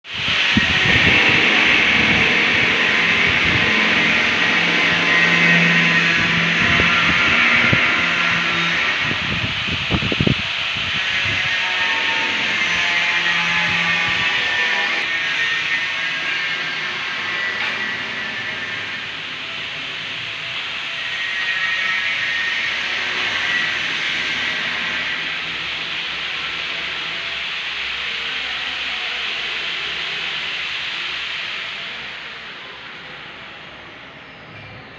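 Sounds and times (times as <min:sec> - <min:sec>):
welding arc hissing and crackling: 0:00.1 - 0:33.9
low hum: 0:00.2 - 0:21.0.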